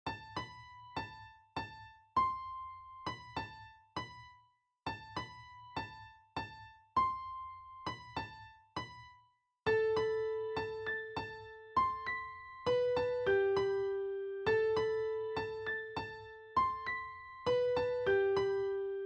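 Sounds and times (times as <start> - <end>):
electric piano melody: 0.1 - 4.3, 4.9 - 9.1, 9.7 - 19.0.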